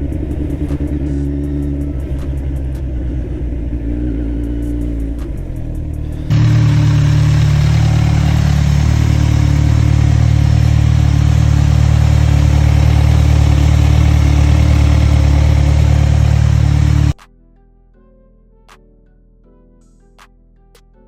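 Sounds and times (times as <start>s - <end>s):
motorcycle engine running steadily: 0.0s - 17.2s.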